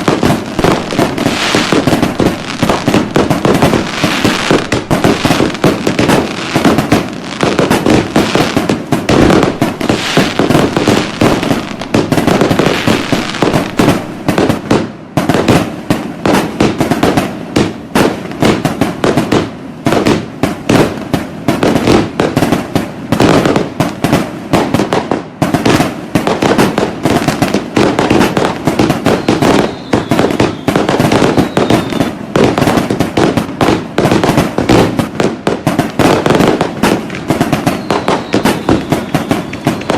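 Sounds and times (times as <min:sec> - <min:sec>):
fireworks bangs and crackles: 0:00.0 - 0:39.9
faint falling whistle: 0:29.1 - 0:32.1, 0:37.7 - 0:39.9.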